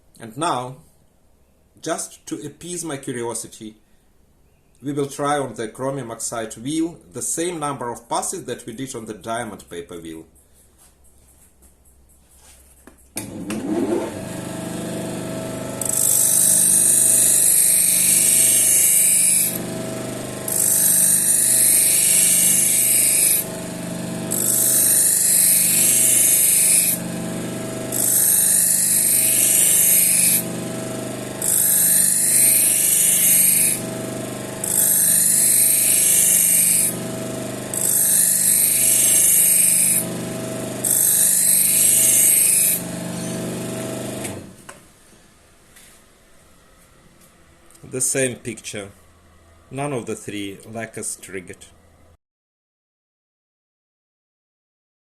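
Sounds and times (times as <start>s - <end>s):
grinder motor running: 13.2s - 44.7s.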